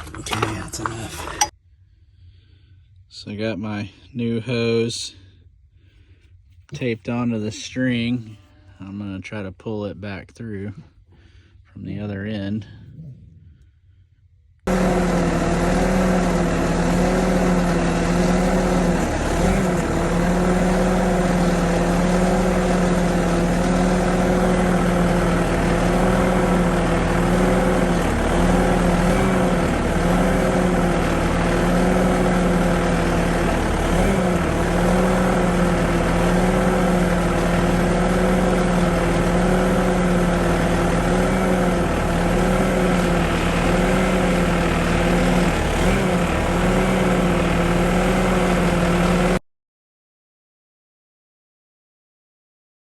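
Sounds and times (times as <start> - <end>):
diesel engine running: 14.7 - 49.4.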